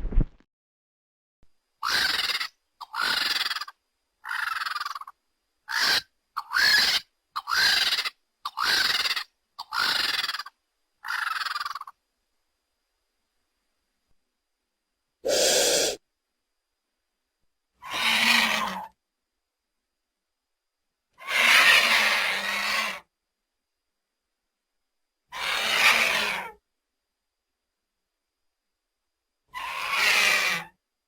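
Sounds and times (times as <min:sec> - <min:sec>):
high-pitched creature screeches: 0:15.3 - 0:16.0.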